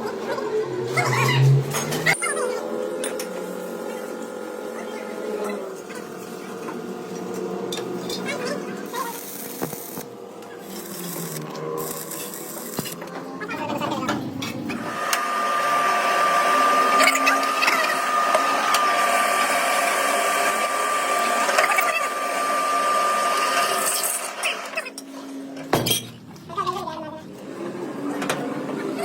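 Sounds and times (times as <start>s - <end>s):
power tool high whine: 14.7s - 24.8s.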